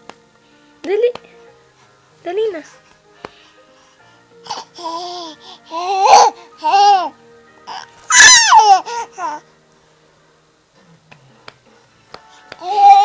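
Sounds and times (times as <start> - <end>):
baby shouting and squealing: 7.7 - 9.4, 12.6 - 13.0.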